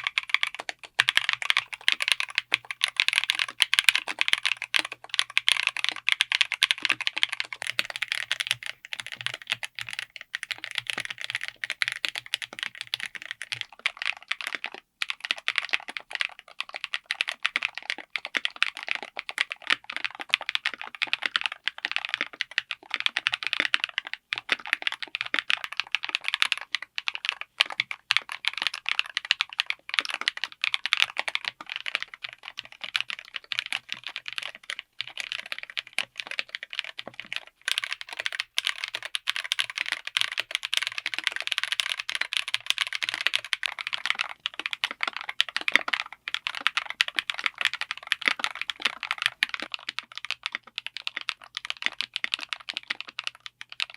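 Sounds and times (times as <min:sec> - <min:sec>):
fast mechanical keyboard typing: 0:00.0 - 0:53.9.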